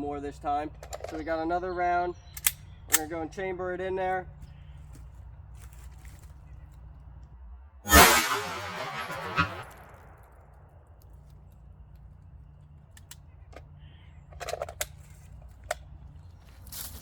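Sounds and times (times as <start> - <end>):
handling clicks and rustles: 11.0 - 17.0.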